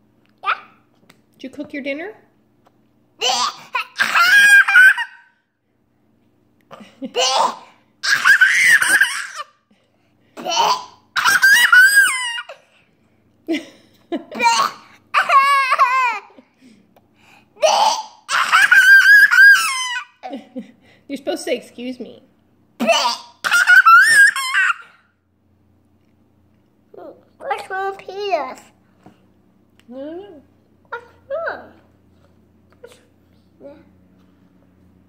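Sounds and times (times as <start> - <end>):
young child laughing and squealing: 3.2 - 5.3, 7.1 - 9.5, 10.5 - 12.6, 14.3 - 16.4, 17.6 - 20.4, 22.8 - 25.0.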